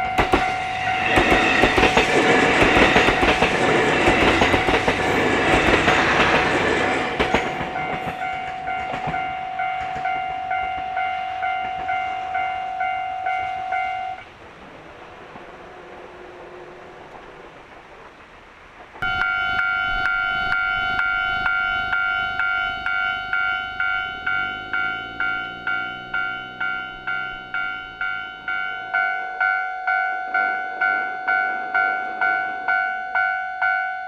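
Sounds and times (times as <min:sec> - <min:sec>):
train wheels clacking on rails: 0:00.0 - 0:10.9, 0:21.0 - 0:28.8
railroad crossing bell dinging: 0:00.0 - 0:14.3, 0:19.0 - 0:34.0
steady tone: 0:19.0 - 0:29.0.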